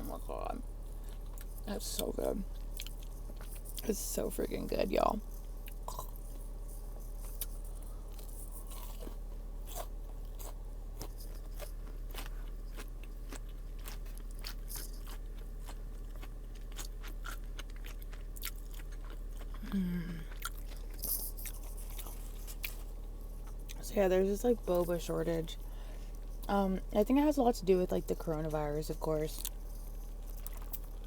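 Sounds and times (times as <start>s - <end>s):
person chewing crunchy food: 0.0s - 3.9s, 5.2s - 23.8s, 29.4s - 31.0s.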